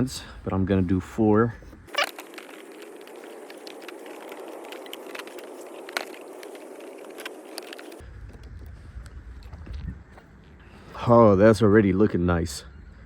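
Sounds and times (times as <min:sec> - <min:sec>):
rustle of handling rubber bands: 0:01.6 - 0:08.0.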